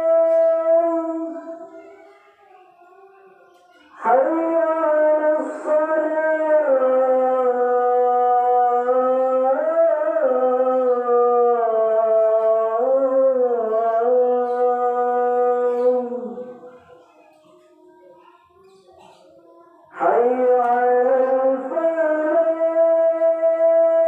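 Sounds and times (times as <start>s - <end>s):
person chanting long note: 0.0s - 1.9s.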